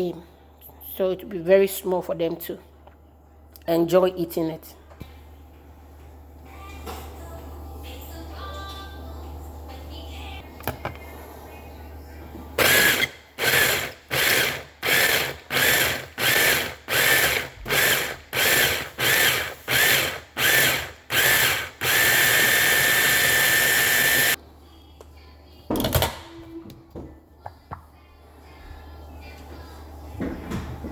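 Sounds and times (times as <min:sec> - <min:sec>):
electric blender chopping: 0:12.6 - 0:24.4.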